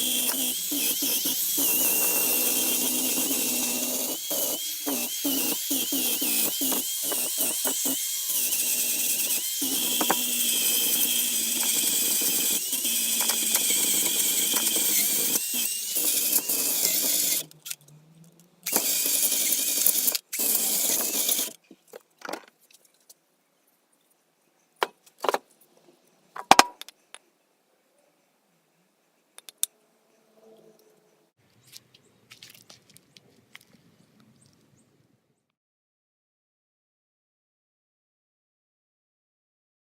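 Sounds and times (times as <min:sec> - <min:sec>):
power tool grinding whine: 0:00.0 - 0:17.6, 0:18.7 - 0:21.6.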